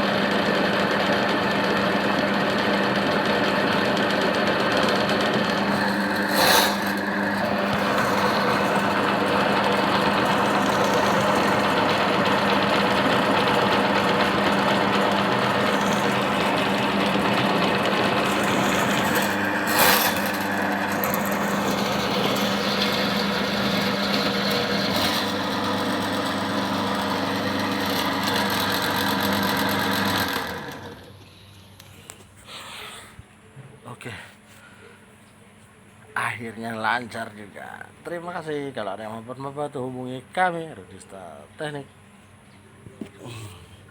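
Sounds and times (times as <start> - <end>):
drain-cleaning machine motor hum: 0.0 - 31.3.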